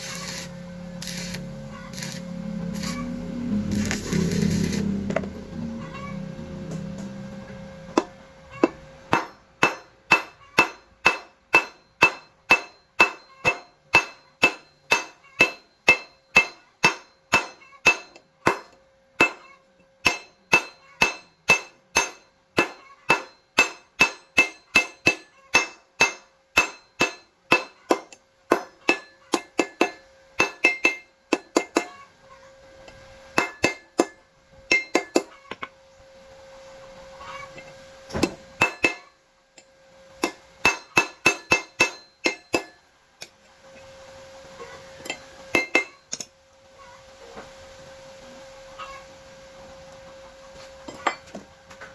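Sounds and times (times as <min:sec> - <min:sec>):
hammer striking steel bar: 0:08.0 - 0:32.0, 0:33.4 - 0:35.7, 0:38.1 - 0:39.1, 0:40.2 - 0:42.8, 0:45.0 - 0:46.3.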